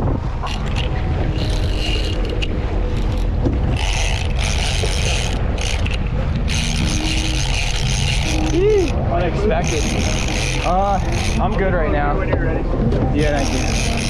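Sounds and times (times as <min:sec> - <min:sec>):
boat engine rumble: 0:00.0 - 0:14.0
fishing reel drag screaming: 0:00.4 - 0:09.0, 0:09.6 - 0:11.6, 0:13.4 - 0:14.0.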